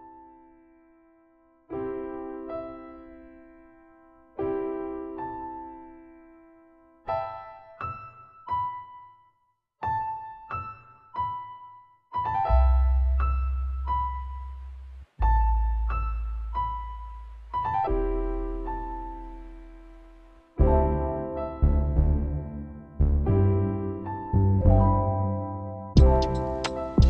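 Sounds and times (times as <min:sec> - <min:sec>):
slow keyboard melody: 0:00.0 - 0:27.0
deep sustained bass: 0:12.6 - 0:25.4.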